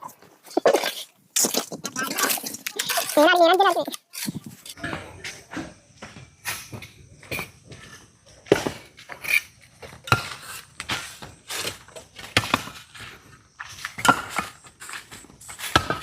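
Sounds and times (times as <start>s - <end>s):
trowel knocking and scraping on bricks: 0.5s - 4.8s.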